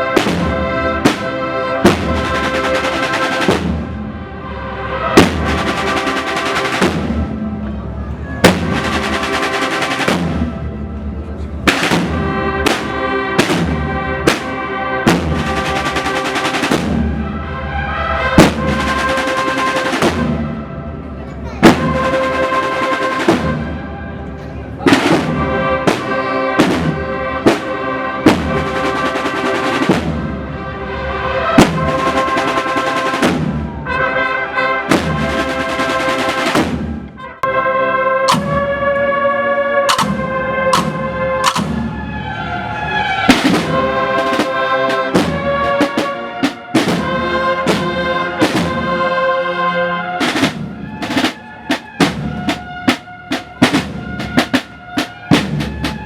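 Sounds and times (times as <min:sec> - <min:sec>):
snare drum rolls: 0:00.0 - 0:04.1, 0:05.2 - 0:07.4, 0:08.4 - 0:10.6, 0:11.7 - 0:17.3, 0:18.4 - 0:20.6, 0:21.6 - 0:23.8, 0:24.9 - 0:30.5, 0:31.6 - 0:33.9, 0:34.9 - 0:37.1, 0:38.3 - 0:38.9, 0:39.9 - 0:42.0, 0:43.3 - 0:49.0, 0:50.2 - 0:56.0
cornets and bugles playing march: 0:00.0 - 0:56.0.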